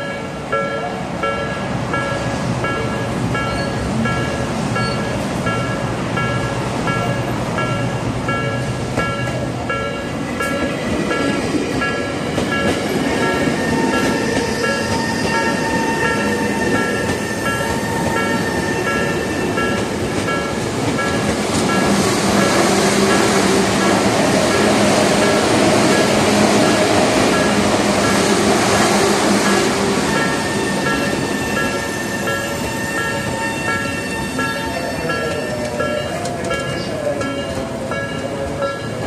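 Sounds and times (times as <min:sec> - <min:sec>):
steady train whine: 0:00.0 - 0:39.0
train rumble: 0:00.0 - 0:39.0
level crossing bell clanging: 0:30.2 - 0:39.0.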